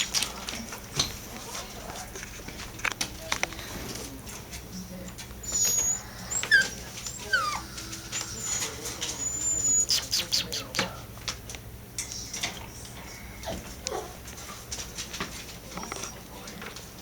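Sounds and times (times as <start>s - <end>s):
puppies whimpering: 0.0s - 0.8s, 5.4s - 11.0s, 12.2s - 14.6s.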